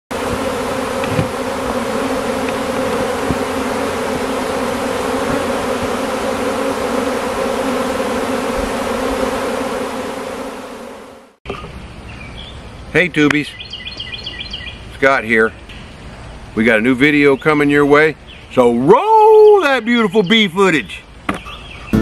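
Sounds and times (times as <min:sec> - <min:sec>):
bee swarm buzzing: 0:00.1 - 0:11.4.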